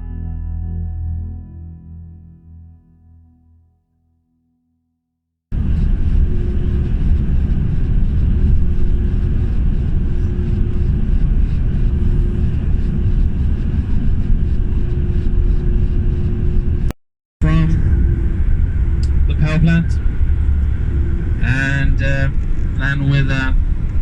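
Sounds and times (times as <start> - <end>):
faint steady hum: 5.6 - 24.0
vehicle rumble: 5.6 - 24.0.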